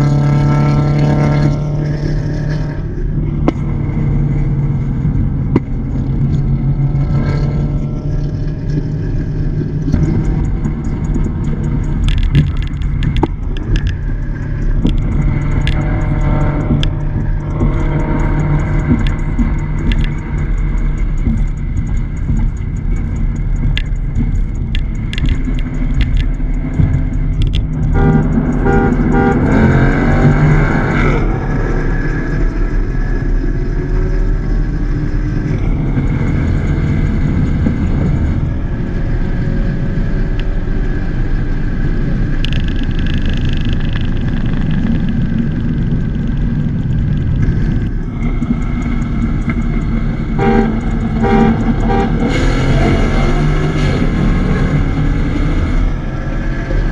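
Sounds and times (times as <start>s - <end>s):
car engine and road rumble: 0.0s - 56.9s
car horn toots: 26.7s - 30.3s, 50.3s - 53.6s.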